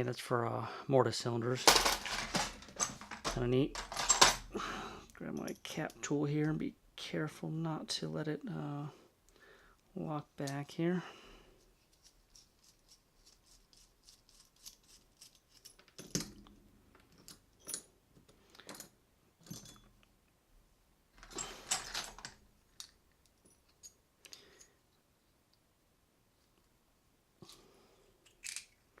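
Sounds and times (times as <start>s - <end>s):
metallic clicks of lock parts: 1.6s - 4.5s, 28.2s - 28.9s
small metal parts clattering: 1.6s - 4.6s, 21.2s - 24.8s, 28.2s - 28.9s.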